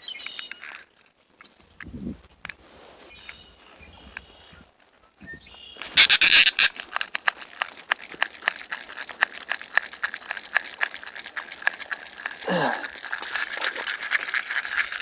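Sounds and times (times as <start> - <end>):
fishing reel clicking: 6.0 - 12.4.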